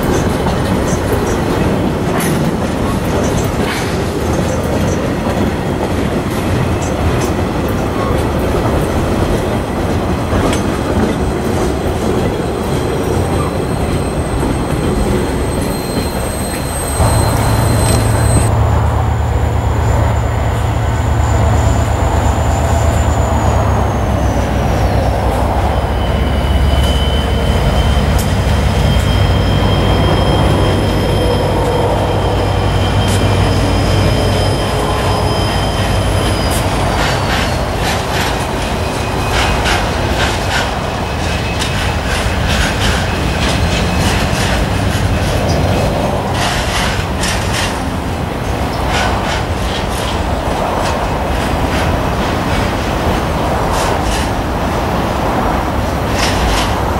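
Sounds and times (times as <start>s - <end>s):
train low drone: 0.0s - 56.9s
train wheel squeal: 10.4s - 18.5s, 19.4s - 56.9s
train wheels clicking: 22.4s - 56.9s.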